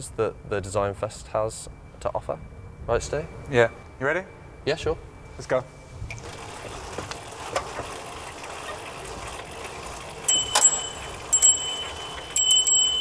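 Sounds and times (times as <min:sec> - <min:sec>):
small metal chime ringing: 0:10.3 - 0:13.0.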